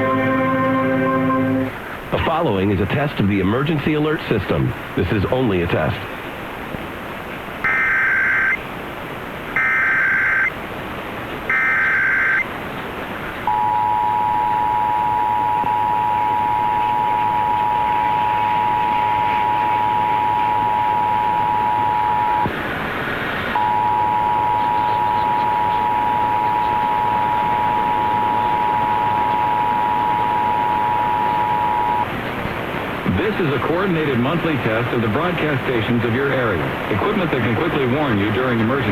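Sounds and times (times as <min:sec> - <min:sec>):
two-tone attention signal: 0:00.0 - 0:01.7, 0:13.5 - 0:22.5, 0:23.6 - 0:32.1
radio static hiss: 0:00.0 - 0:38.9.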